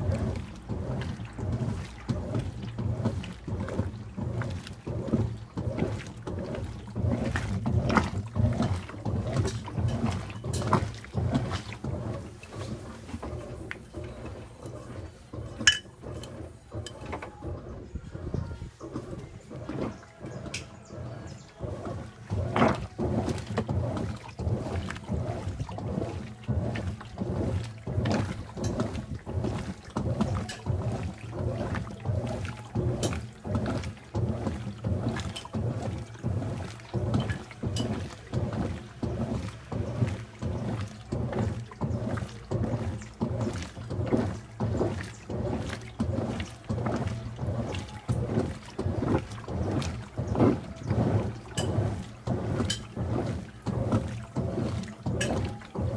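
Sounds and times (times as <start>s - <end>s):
washing machine sloshing water: 0.0s - 55.9s.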